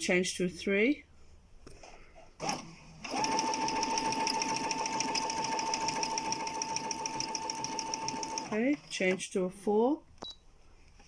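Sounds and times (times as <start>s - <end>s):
sewing machine stitching fabric: 2.4s - 9.2s.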